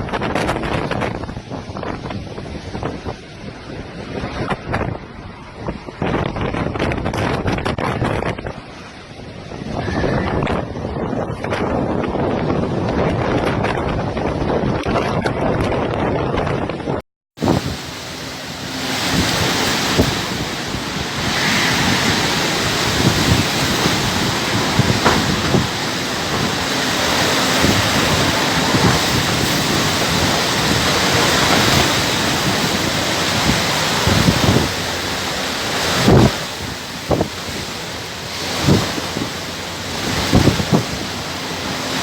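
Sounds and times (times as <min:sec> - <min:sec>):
hurricane wind roaring: 0:00.0 - 0:42.0
wind buffeting microphone: 0:00.0 - 0:42.0
short knocks: 0:23.3 - 0:26.7.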